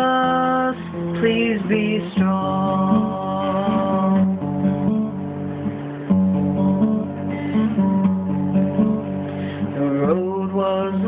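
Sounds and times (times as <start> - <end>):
acoustic guitar strumming chords: 0.0 - 11.0.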